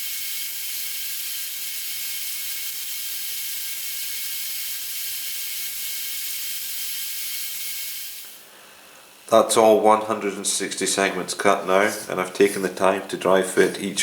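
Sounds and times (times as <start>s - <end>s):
steady high hiss: 6.2s - 14.0s.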